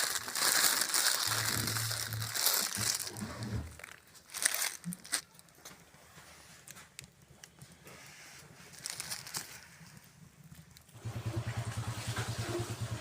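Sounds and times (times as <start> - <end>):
plastic packaging crinkling: 0.0 - 6.0, 6.6 - 11.0.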